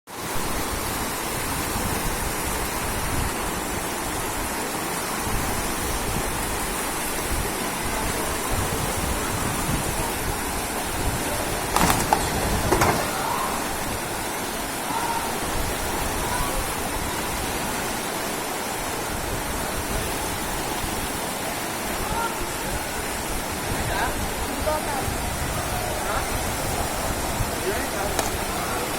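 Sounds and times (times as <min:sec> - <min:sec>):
floodwater rushing: 0:00.1 - 0:28.9
sharp knocks: 0:11.7 - 0:13.3.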